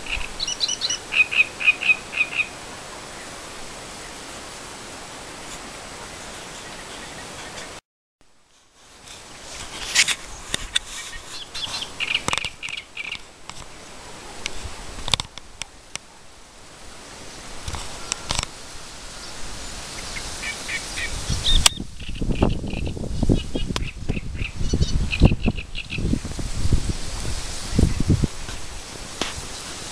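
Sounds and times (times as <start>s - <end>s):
small birds chirping: 0.0s - 3.4s, 10.0s - 13.3s.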